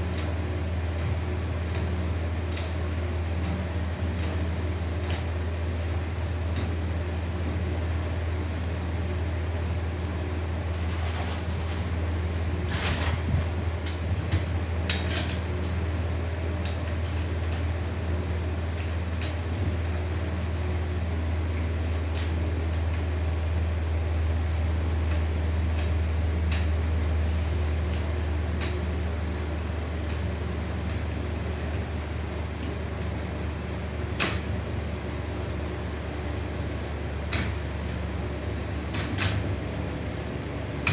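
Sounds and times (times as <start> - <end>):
steady low hum: 0.0 - 40.9
equipment clicks and rustles: 10.8 - 12.0.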